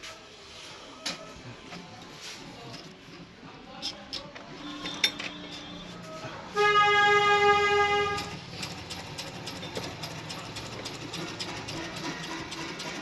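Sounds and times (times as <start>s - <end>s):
steady horn-like tone: 4.6s - 8.4s.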